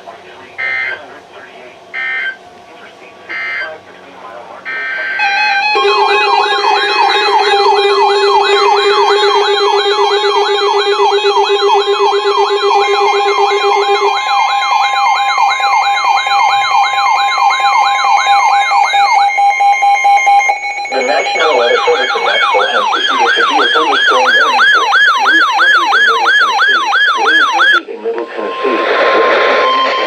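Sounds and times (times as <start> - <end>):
warbling electronic siren tone: 0.6 - 1.1, 1.9 - 2.4, 3.3 - 3.8, 4.6 - 30.0
steady beep tone: 0.6 - 1.2, 1.9 - 2.4, 3.2 - 3.8, 4.6 - 30.0
low pulsing tone: 4.6 - 30.0.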